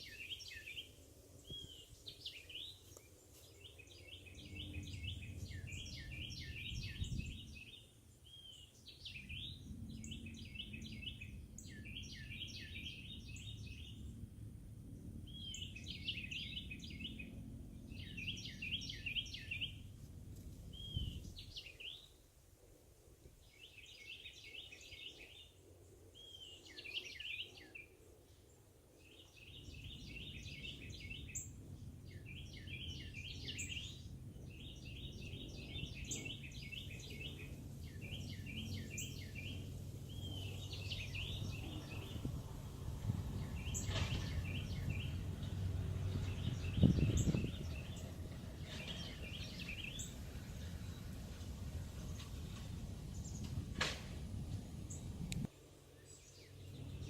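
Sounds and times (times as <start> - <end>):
songbirds singing: 0.0 - 20.0, 20.7 - 22.2, 23.3 - 57.0
low rumble: 31.6 - 55.5.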